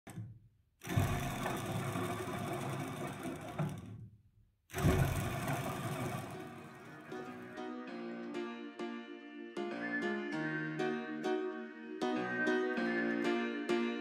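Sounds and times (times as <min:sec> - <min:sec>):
small lathe clattering: 0:00.1 - 0:04.1, 0:04.7 - 0:07.4.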